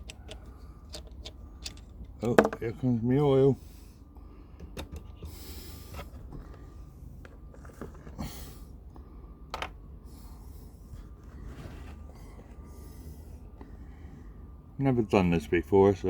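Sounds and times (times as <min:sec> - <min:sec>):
light clicks and knocks of tools: 0:00.0 - 0:02.7
steady low hum: 0:00.0 - 0:16.0.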